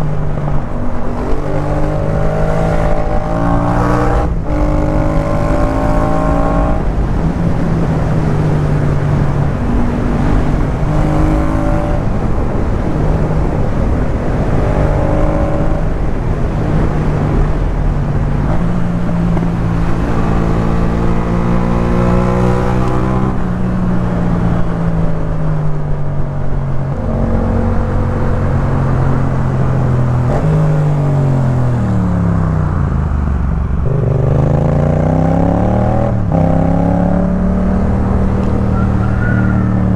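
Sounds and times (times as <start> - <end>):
motorcycle engine revving through gears: 0.9 - 16.1, 18.4 - 23.4, 33.8 - 39.9.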